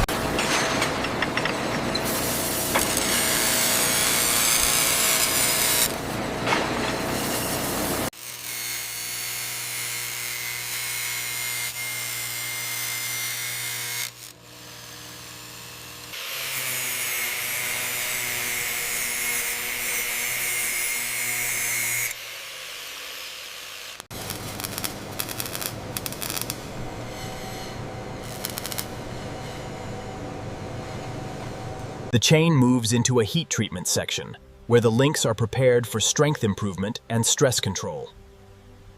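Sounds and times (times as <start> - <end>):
burst of crackling: 24.1 - 26.6.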